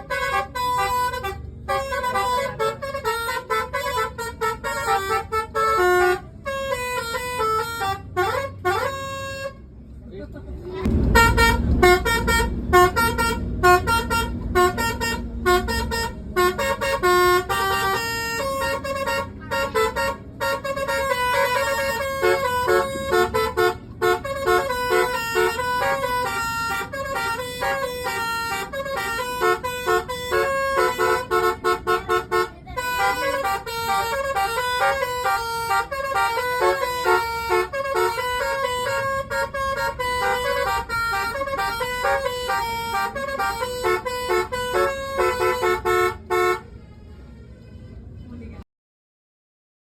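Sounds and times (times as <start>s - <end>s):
bus air horn playing a tune: 0.0s - 9.8s, 10.9s - 48.2s
low rumble: 10.7s - 16.5s.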